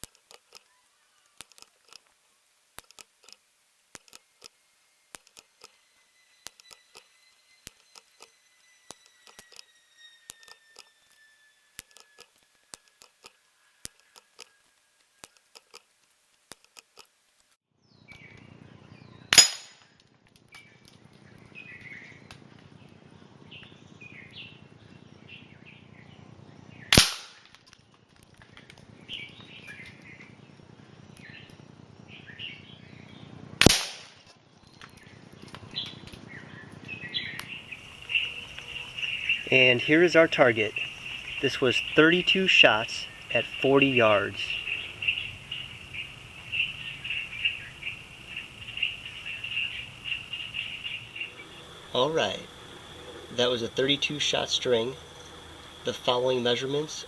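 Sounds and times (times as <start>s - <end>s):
faint clicks: 0.0s - 5.8s, 6.4s - 17.6s
birds chirping: 0.0s - 19.5s, 20.5s - 33.5s, 34.3s - 57.0s
air rifle shots: 19.3s - 19.8s, 26.9s - 27.5s, 33.6s - 34.2s.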